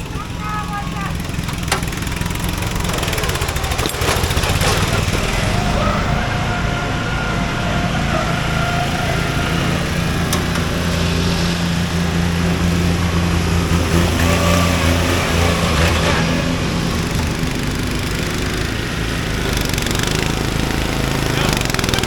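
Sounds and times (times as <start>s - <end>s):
lawn mower engine running: 0.0s - 22.0s.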